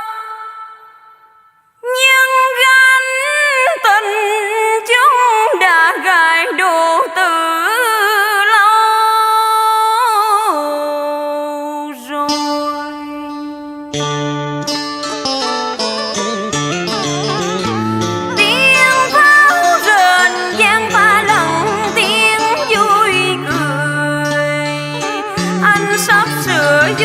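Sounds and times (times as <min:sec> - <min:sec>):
instrumental lead melody with vibrato: 0:13.0 - 0:27.0.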